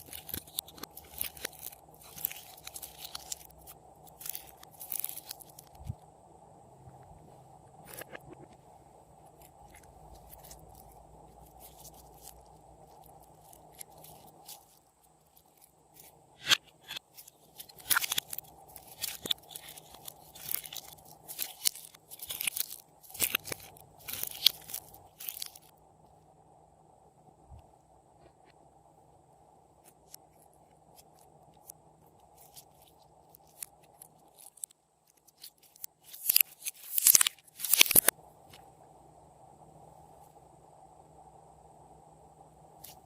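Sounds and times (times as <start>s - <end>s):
slime crackling and squishing: 0.0s - 5.9s, 9.3s - 16.1s, 16.8s - 25.7s, 31.0s - 38.1s.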